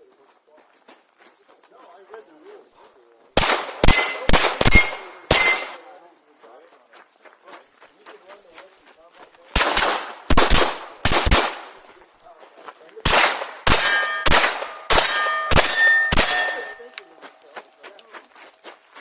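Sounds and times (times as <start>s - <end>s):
pistol shots: 3.4s - 6.0s, 9.6s - 11.9s, 13.0s - 16.9s
steel plates ringing: 3.8s - 6.0s, 13.6s - 17.0s.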